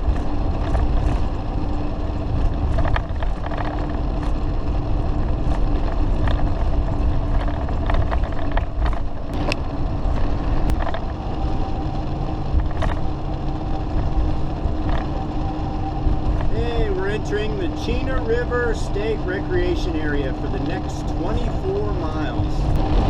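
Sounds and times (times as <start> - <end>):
sharp rattles and knocks: 0.0 - 11.2
engine and road rumble: 0.0 - 23.0
faint whine: 0.0 - 23.0.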